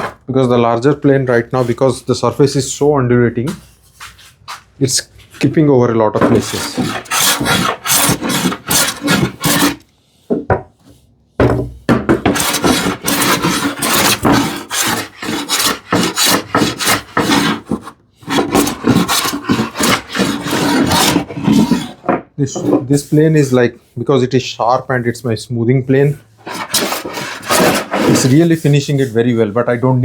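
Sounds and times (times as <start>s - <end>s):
hand plane rasping on wood: 6.2s - 9.8s, 12.2s - 22.0s, 26.4s - 29.1s.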